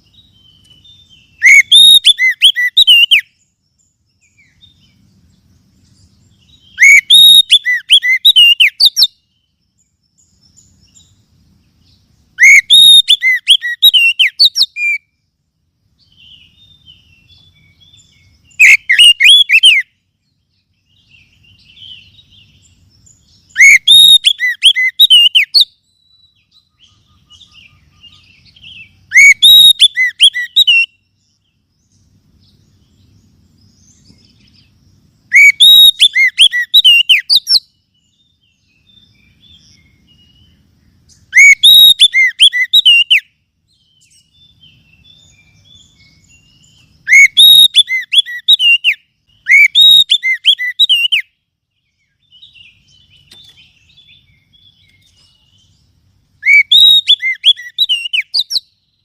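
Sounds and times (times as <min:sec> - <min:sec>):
bird singing whistled phrases: 0:00.0 - 0:03.4, 0:06.4 - 0:09.6, 0:12.4 - 0:15.1, 0:16.1 - 0:20.0, 0:20.9 - 0:31.4, 0:35.3 - 0:55.8, 0:56.4 - 0:59.0.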